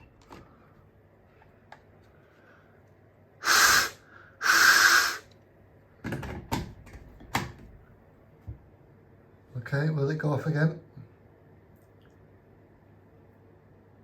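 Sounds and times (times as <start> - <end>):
loud bursts of hiss: 3.4 - 5.3.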